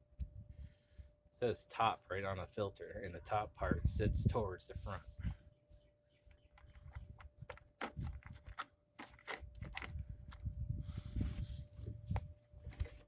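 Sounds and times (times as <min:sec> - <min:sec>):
plastic cover clicks and knocks: 0:06.6 - 0:10.0.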